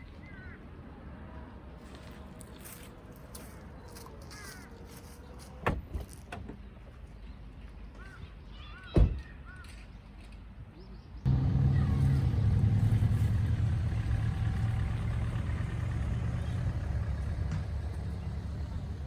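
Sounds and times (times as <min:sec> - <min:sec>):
vehicle engine humming: 0:11.3 - 0:19.0.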